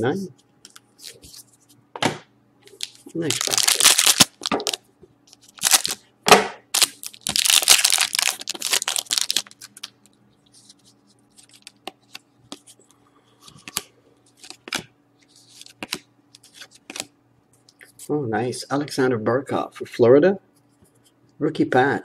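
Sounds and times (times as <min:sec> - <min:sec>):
wrapper tearing: 0:02.7 - 0:04.8, 0:05.4 - 0:06.0, 0:06.7 - 0:09.9
wrapper crinkling: 0:02.7 - 0:06.0, 0:06.7 - 0:10.0.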